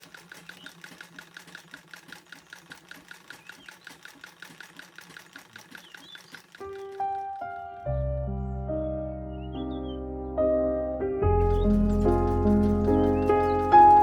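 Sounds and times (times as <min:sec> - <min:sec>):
sewing machine stitching: 0:00.0 - 0:07.5, 0:11.4 - 0:14.0.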